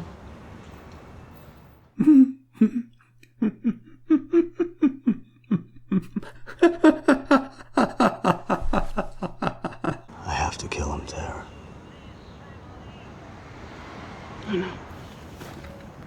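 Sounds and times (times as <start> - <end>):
person laughing: 2.0 - 10.1.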